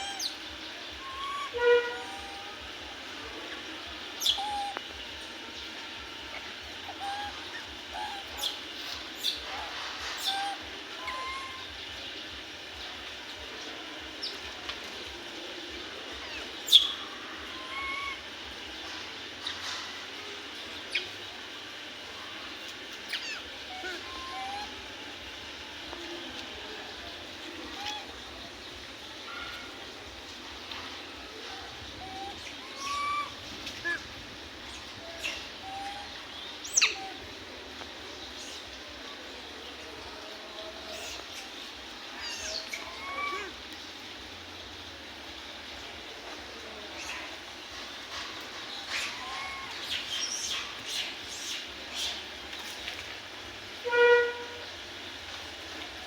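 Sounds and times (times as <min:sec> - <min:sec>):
high animal squeaks and chirps: 0:00.0 - 0:00.4, 0:01.0 - 0:02.8, 0:04.2 - 0:04.9, 0:06.4 - 0:11.8, 0:16.3 - 0:18.2, 0:23.0 - 0:24.8, 0:32.0 - 0:34.1, 0:34.7 - 0:37.2, 0:42.1 - 0:43.6, 0:48.7 - 0:52.2
steady background hiss: 0:00.0 - 0:56.0
short high-pitched animal calls: 0:01.0 - 0:02.6.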